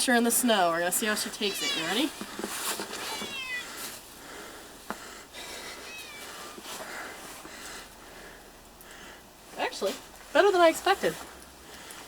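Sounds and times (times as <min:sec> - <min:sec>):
cat meowing faintly: 0:01.4 - 0:02.1, 0:03.0 - 0:03.8, 0:05.7 - 0:06.6.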